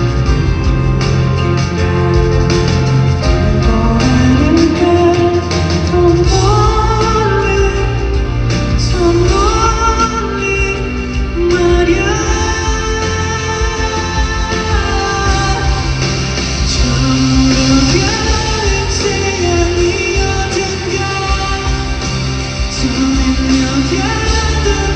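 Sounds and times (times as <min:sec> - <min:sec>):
live band music: 0:00.0 - 0:24.9.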